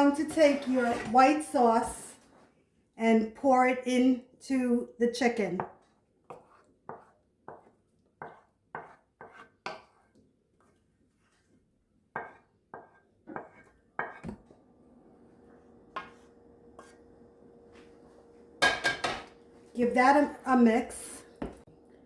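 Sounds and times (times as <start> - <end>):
utensil scraping a skillet: 0.0 - 2.4, 5.7 - 11.6, 12.2 - 14.5, 15.9 - 17.0.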